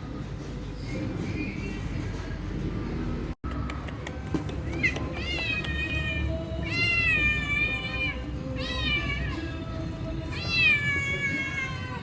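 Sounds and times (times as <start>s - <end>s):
cat meowing: 10.3s - 12.0s.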